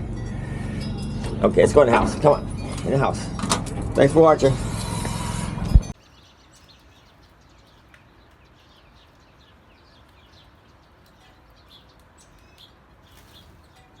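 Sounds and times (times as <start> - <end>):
small birds chirping: 5.9 - 14.0.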